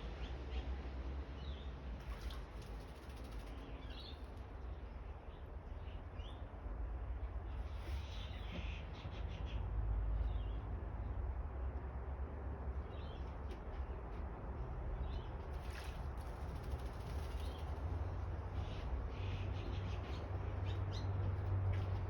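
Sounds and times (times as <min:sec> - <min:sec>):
bird splashing in water: 0:02.0 - 0:04.0, 0:15.5 - 0:17.8.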